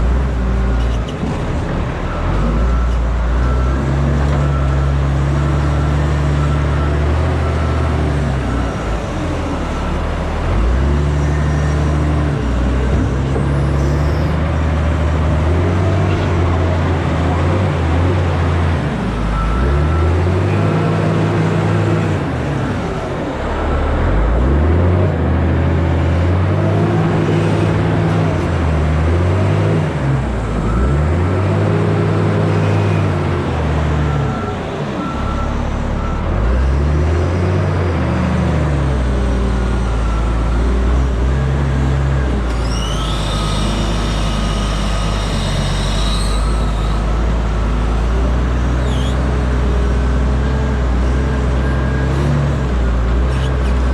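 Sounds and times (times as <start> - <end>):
diesel truck engine shifting gears: 0.0 - 53.9
faint high whistle: 42.6 - 47.0.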